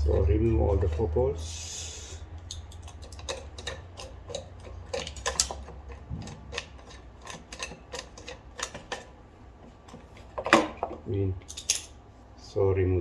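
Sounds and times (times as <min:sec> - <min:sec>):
hand tools clicking on metal: 0:02.4 - 0:09.2.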